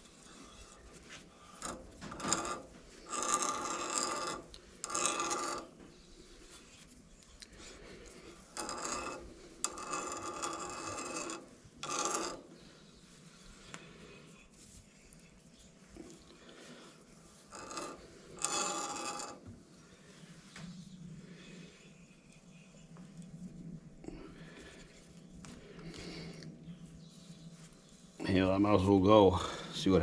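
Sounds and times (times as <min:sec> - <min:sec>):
tap scraping metal threads: 0:00.0 - 0:06.0, 0:08.5 - 0:12.6, 0:17.4 - 0:19.6.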